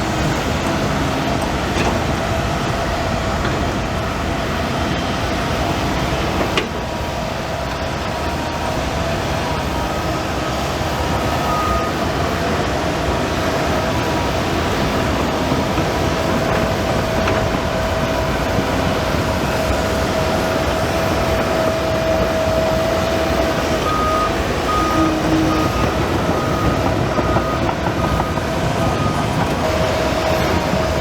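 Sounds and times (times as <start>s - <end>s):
tracks clanking: 0.0s - 9.4s, 10.5s - 31.0s
bulldozer engine running: 0.0s - 31.0s
reversing alarm beeping: 9.4s - 15.0s, 15.8s - 31.0s.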